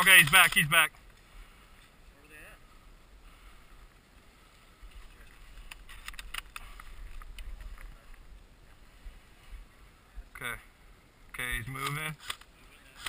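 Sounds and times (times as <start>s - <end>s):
sharp clicks: 0.0s - 0.7s, 5.6s - 7.6s, 11.7s - 13.0s.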